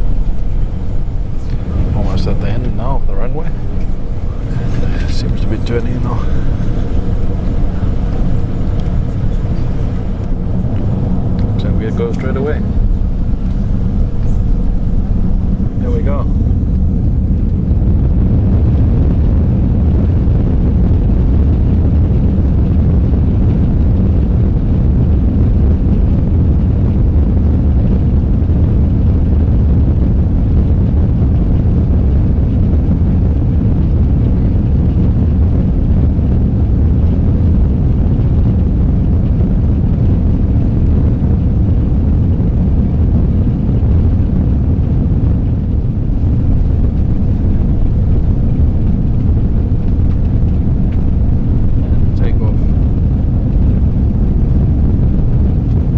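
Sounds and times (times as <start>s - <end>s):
airplane engines low rumble: 0.0s - 55.9s.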